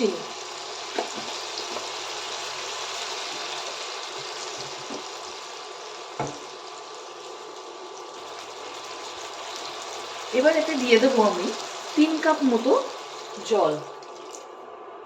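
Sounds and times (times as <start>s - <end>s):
potatoes sizzling in oil: 0.0s - 14.6s
knock: 6.2s - 6.4s.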